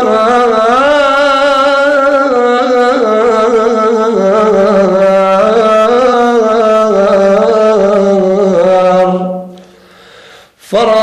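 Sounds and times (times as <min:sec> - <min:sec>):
man singing melismatic line: 0:10.7 - 0:11.0.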